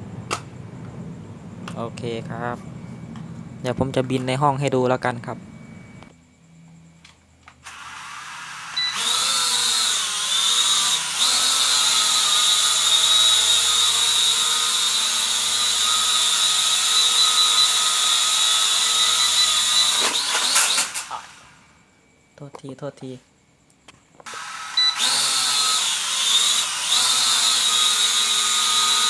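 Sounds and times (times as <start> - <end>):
toy drone propeller whine: 7.6 - 21.7, 24.2 - 29.0.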